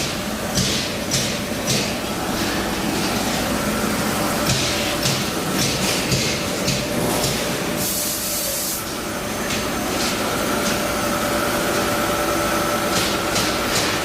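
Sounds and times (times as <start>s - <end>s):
hiss bursts: 7.1s - 9.0s.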